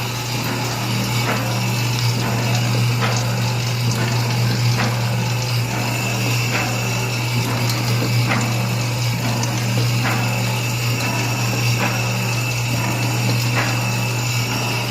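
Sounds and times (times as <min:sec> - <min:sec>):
pump motor humming: 0:00.0 - 0:14.9.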